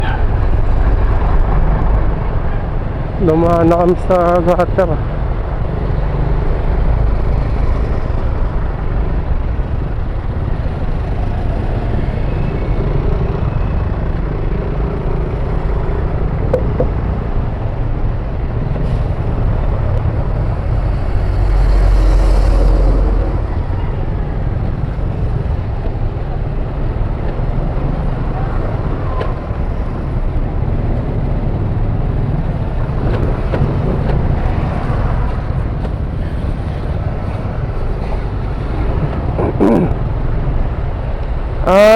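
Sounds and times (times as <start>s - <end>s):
scooter engine rumble: 13.9s - 18.4s
wind buffeting microphone: 22.8s - 41.6s.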